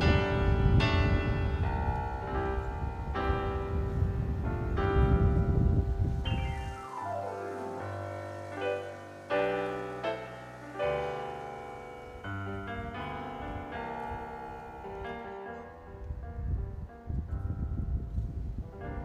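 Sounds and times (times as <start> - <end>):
slow piano music: 0.0 - 19.0.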